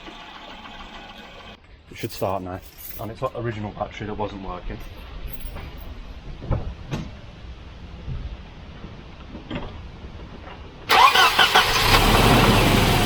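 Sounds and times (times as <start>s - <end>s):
car engine cranking and starting: 0.0s - 1.6s, 10.9s - 13.0s.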